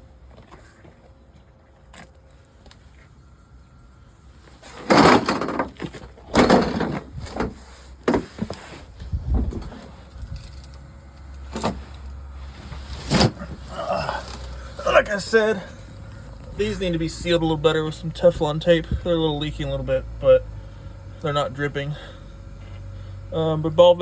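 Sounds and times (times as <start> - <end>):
low hum: 0.0 - 24.0
loud knocks and scraping clatters: 4.6 - 10.7, 11.4 - 13.7.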